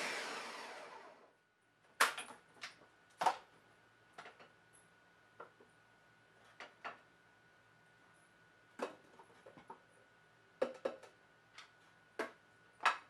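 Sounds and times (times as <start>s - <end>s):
blender motor winding down: 0.0s - 1.3s.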